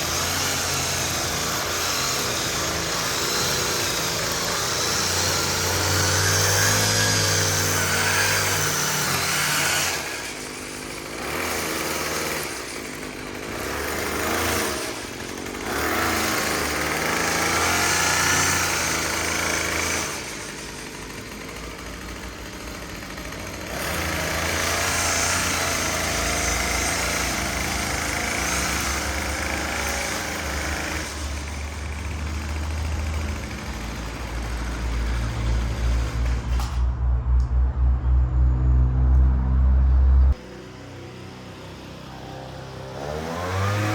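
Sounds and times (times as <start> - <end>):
lawn mower engine running: 0.0 - 37.0, 40.3 - 43.9
low pulsing rumble: 36.9 - 40.4.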